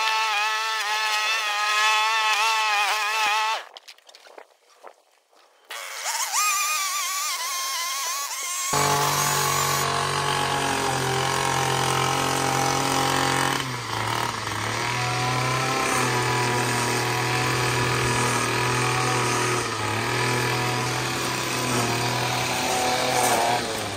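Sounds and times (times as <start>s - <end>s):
lawn mower engine running: 8.2s - 23.9s.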